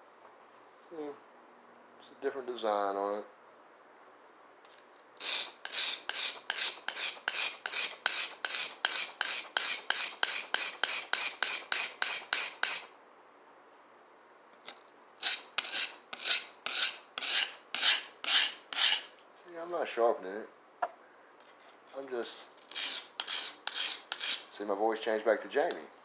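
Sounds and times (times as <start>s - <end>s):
knife scraping on whetstone: 5.2s - 12.9s, 15.2s - 19.1s, 21.4s - 24.6s.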